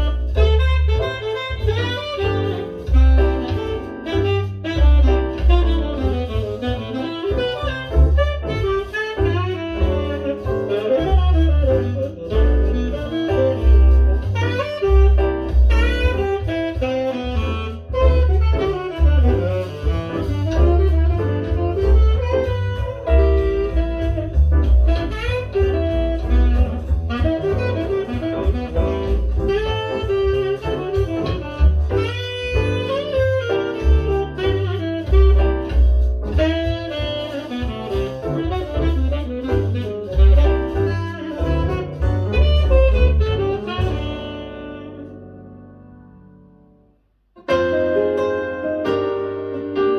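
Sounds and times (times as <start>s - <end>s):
saxophone lead: 0.0s - 46.7s
deep pulsing bass line: 0.0s - 46.8s.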